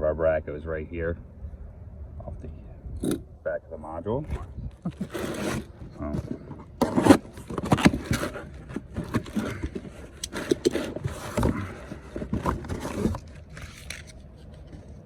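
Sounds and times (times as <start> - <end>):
metal parts knocking and scraping: 4.9 - 14.9.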